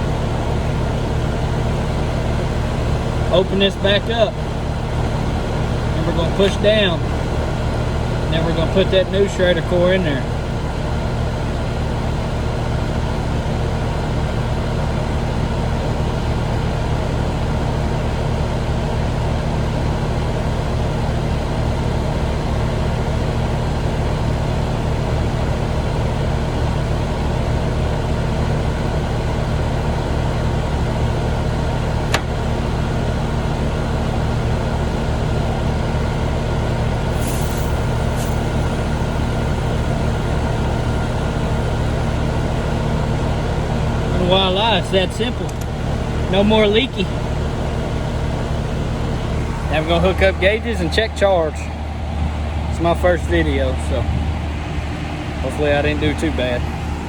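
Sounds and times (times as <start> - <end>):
machine hum: 37.0 - 42.6, 45.6 - 57.0.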